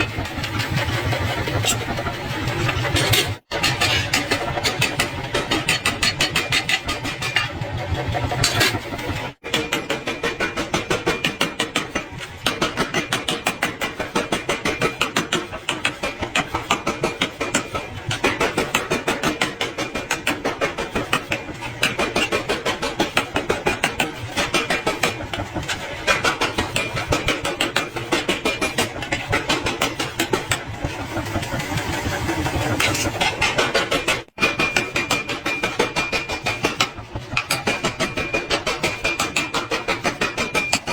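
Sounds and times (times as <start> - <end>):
power hammer pounding hot iron: 23.1 - 40.9.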